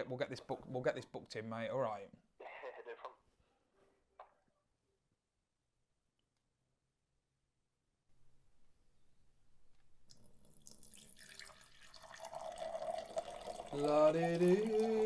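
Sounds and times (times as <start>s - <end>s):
man humming: 13.8s - 15.0s.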